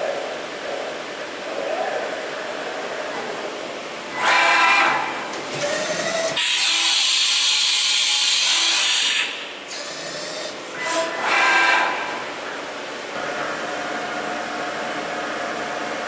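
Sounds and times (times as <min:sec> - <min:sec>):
machine whirring: 0:00.8 - 0:16.0
loud steady hiss: 0:06.1 - 0:09.8, 0:10.4 - 0:13.6.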